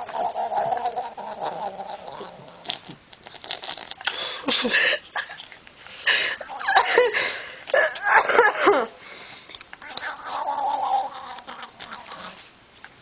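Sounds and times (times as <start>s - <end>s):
cat yowling: 9.8s - 12.2s.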